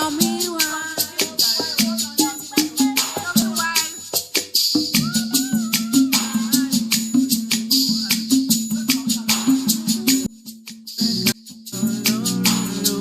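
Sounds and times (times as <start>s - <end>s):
live band playing instrumental: 0.0s - 10.3s
shaker rattling: 0.0s - 13.0s.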